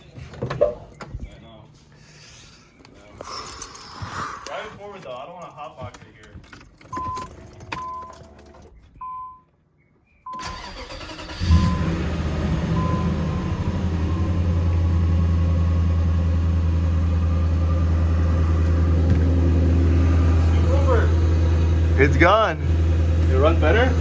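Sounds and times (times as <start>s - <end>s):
starter motor cranking: 10.4s - 12.0s
car engine idling: 10.4s - 24.0s.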